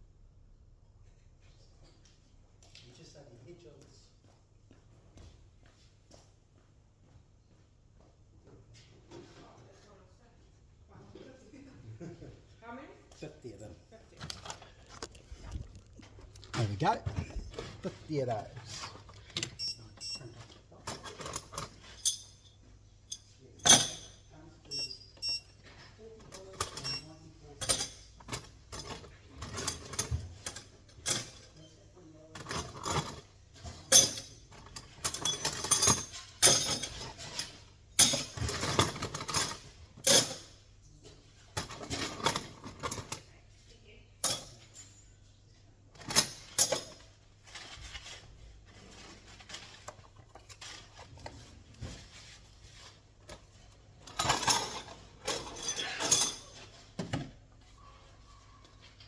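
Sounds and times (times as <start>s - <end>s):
metal fasteners clinking: 14.2s - 25.4s, 32.4s - 43.2s, 44.2s - 45.3s, 46.0s - 48.2s, 48.8s - 57.2s.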